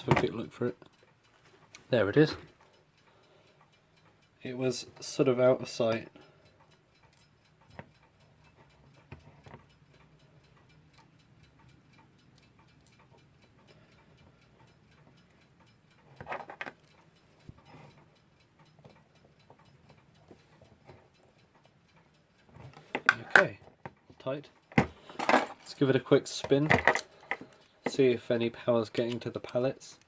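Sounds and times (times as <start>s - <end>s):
mechanical clock ticking: 0.0s - 30.0s
screw clicks and taps: 7.0s - 9.7s, 26.4s - 28.0s.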